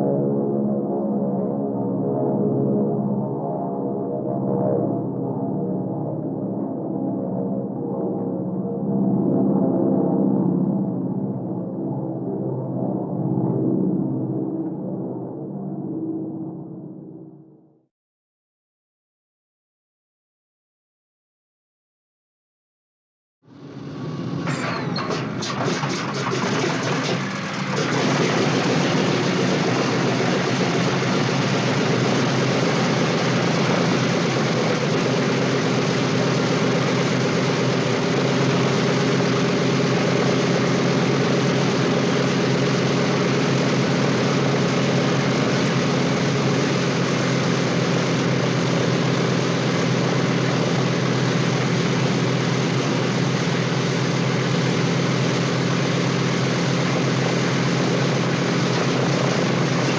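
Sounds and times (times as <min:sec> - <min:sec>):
aircraft engines idling: 0:23.5 - 0:59.9.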